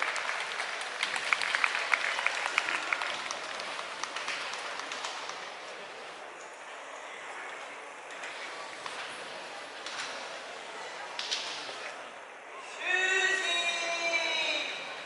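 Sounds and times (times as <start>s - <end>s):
crowd applauding: 0.0s - 5.7s.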